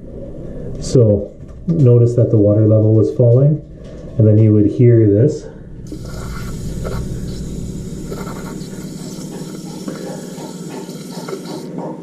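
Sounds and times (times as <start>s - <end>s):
toilet fill valve hissing: 5.9s - 12.0s.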